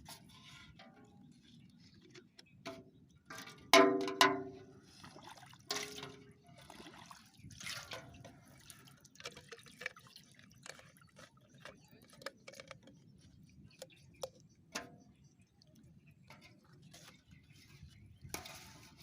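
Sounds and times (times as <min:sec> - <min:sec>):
water dripping and splashing: 0:04.0 - 0:14.8.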